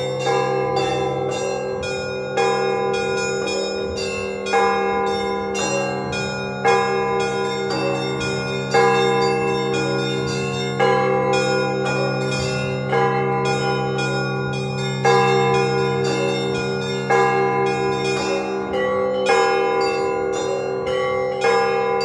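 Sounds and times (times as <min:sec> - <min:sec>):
heavy church bell: 0:00.0 - 0:22.0
smaller bells ringing: 0:00.0 - 0:22.0.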